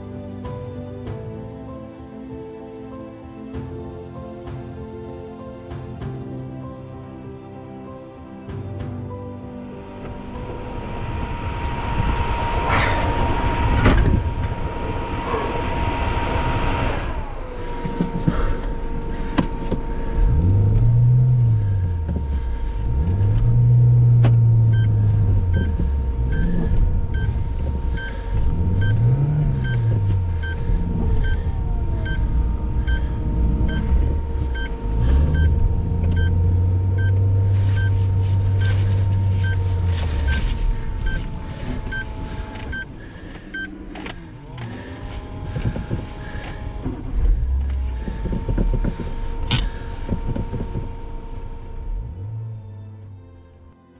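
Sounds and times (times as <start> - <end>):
loud wind noise: 9.8 - 18.2
steady hum: 9.8 - 53.8
car engine revving: 10.0 - 53.2.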